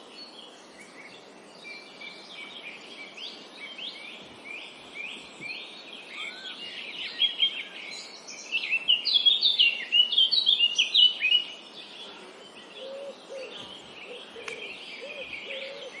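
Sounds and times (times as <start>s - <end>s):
small birds chirping and singing: 0.0s - 16.0s
steady background hiss: 0.0s - 16.0s
low bird call: 12.0s - 16.0s.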